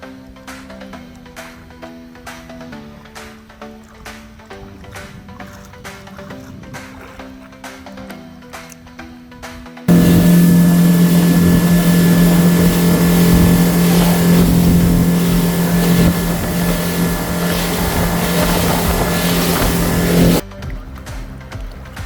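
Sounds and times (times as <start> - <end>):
rush of wind and water: 2.3 - 7.7, 9.9 - 20.4
motorboat engine running: 9.9 - 22.0.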